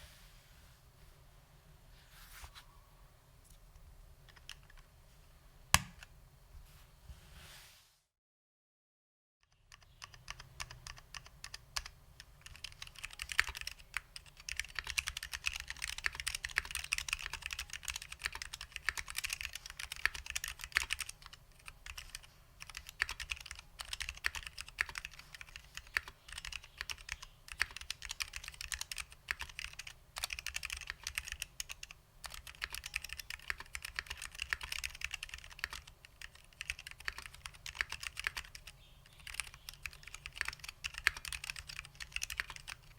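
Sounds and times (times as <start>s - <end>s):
fast typing on keyboard: 9.5s - 42.9s.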